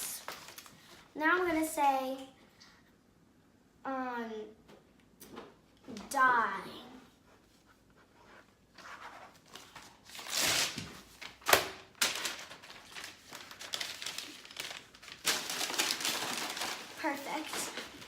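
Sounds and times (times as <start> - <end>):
package crinkling and rustling: 0.0 - 1.0, 9.5 - 18.0.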